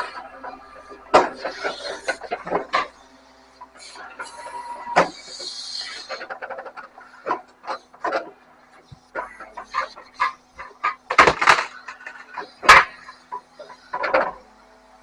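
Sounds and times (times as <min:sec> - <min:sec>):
knocks and clatter of waste: 0:00.0 - 0:03.0, 0:06.0 - 0:14.5
steady machine hum: 0:00.0 - 0:15.0.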